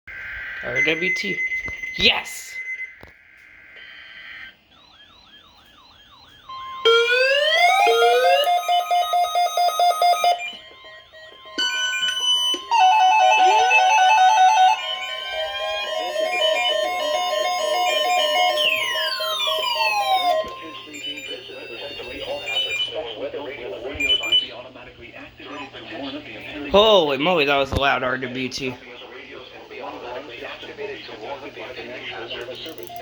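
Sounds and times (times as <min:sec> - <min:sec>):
loud rapid beeping: 0:00.1 - 0:23.0
steady high alert tone: 0:00.1 - 0:23.2
warbling alarm: 0:00.1 - 0:24.8
rising siren-like tones: 0:03.0 - 0:22.9.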